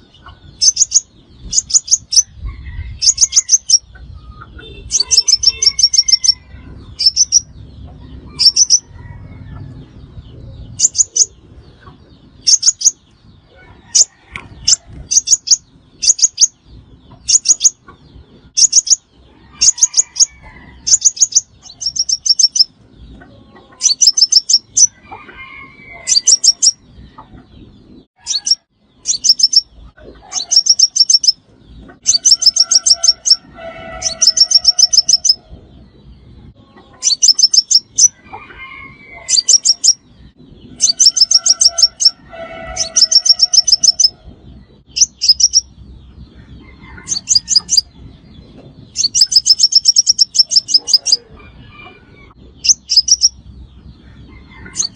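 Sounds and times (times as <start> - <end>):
sunbird chipping calls: 0.0 - 2.3, 3.0 - 8.9, 10.7 - 13.1, 13.9 - 22.8, 23.7 - 24.9, 26.0 - 26.8, 28.2 - 35.4, 36.9 - 38.2, 39.2 - 40.0, 40.7 - 44.2, 44.9 - 45.7, 48.9 - 51.4, 52.6 - 53.4.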